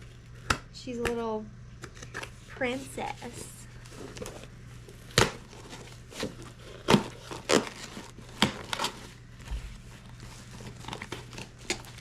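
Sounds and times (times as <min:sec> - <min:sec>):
packaging rustling and tearing: 0:03.2 - 0:12.0.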